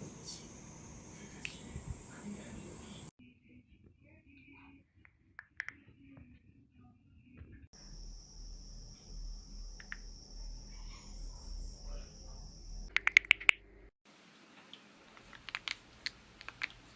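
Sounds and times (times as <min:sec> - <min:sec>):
knuckles cracking: 0:05.4 - 0:05.8, 0:12.9 - 0:13.6, 0:14.7 - 0:16.9
high-pitched whine: 0:07.8 - 0:13.6.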